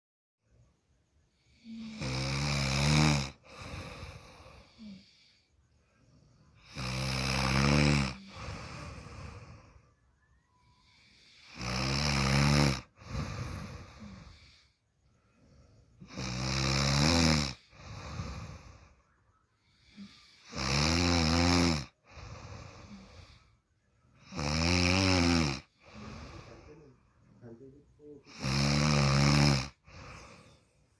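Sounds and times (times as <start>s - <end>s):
person snoring loudly: 1.3s - 30.9s
quiet breath out: 3.4s - 6.7s, 8.0s - 11.6s, 12.8s - 16.1s, 17.6s - 20.6s, 21.9s - 24.2s, 25.6s - 28.4s, 29.7s - 30.9s.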